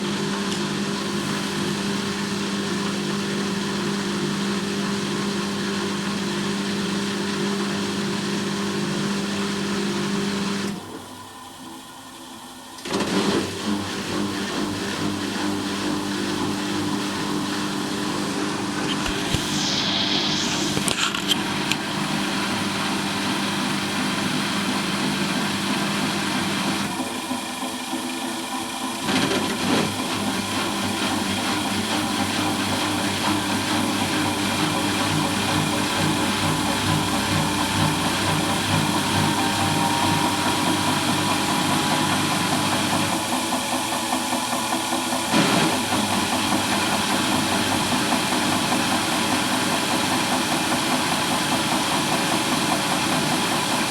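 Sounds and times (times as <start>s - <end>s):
washing machine motor whine: 0.0s - 53.9s
rhythmic knocking: 31.5s - 43.7s.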